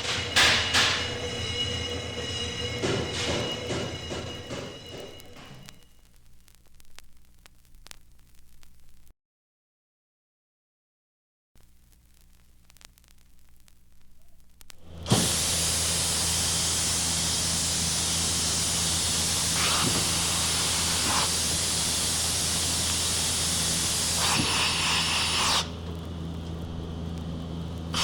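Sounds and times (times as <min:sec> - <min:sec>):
faint crackle: 0:05.2 - 0:09.1, 0:11.6 - 0:15.1, 0:19.3 - 0:28.0
loud steady hiss: 0:11.6 - 0:28.0
low even hum: 0:25.7 - 0:28.0.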